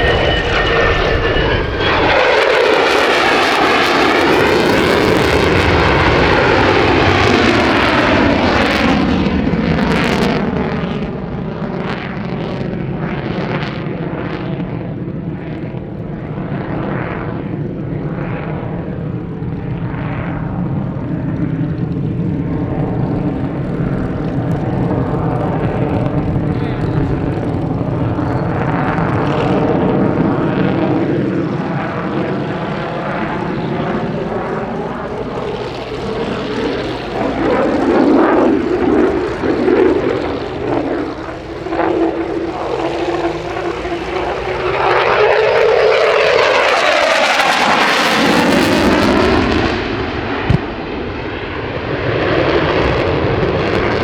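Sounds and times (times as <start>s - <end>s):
fighter jet rumble: 0.0s - 3.4s.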